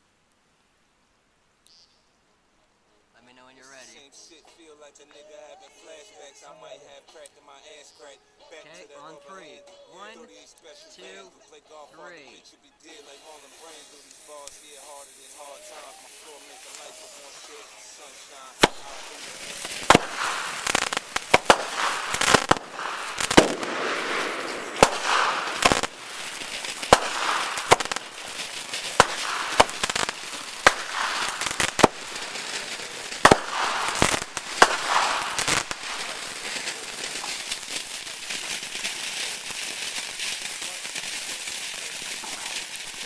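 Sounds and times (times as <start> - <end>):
fireworks hissing crackle: 3.2 - 43.0
fireworks popping and banging: 3.7 - 43.0.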